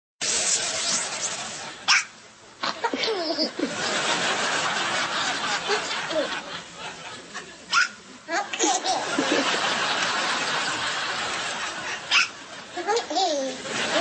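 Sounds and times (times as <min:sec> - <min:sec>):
people snickering and laughing: 0:02.6 - 0:07.7, 0:08.4 - 0:14.0.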